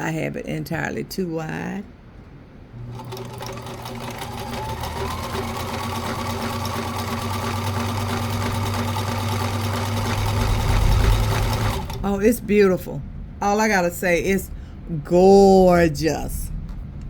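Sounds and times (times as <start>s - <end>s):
sewing machine running: 2.8s - 12.2s.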